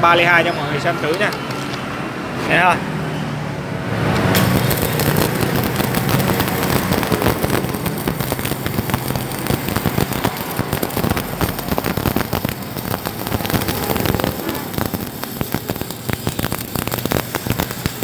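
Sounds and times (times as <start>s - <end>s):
welding arc crackling: 3.8s - 18.0s.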